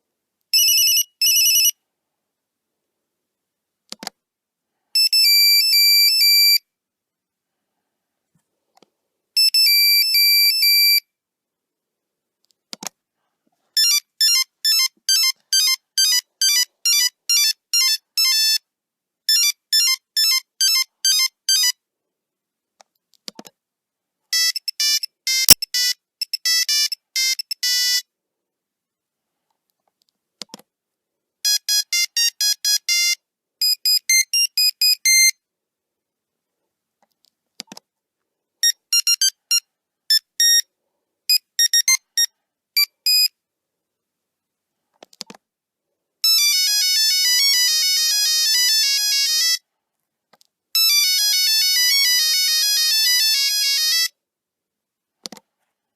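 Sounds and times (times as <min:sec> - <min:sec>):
monophonic ringtone beeps: 0:00.6 - 0:01.7.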